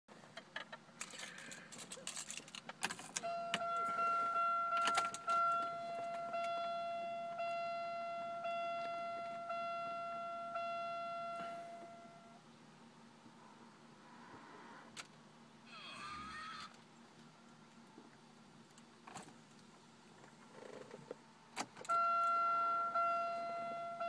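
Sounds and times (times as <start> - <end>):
car keys jangling: 1.0 - 4.1, 4.7 - 6.6
car warning chime: 3.2 - 12.4, 21.9 - 24.0.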